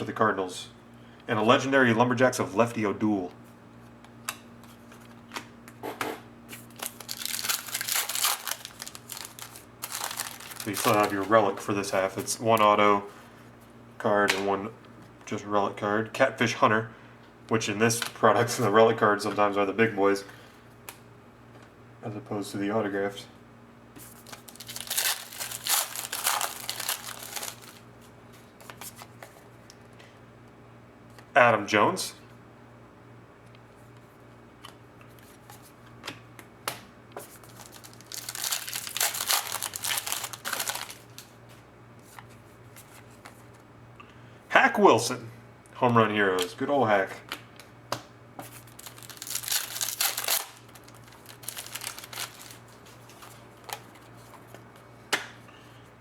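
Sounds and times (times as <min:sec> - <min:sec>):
faint steady hum: 0:00.0 - 0:56.0
card pack wrapper crinkling: 0:06.5 - 0:12.6, 0:24.0 - 0:27.9, 0:37.2 - 0:41.4, 0:48.5 - 0:54.3.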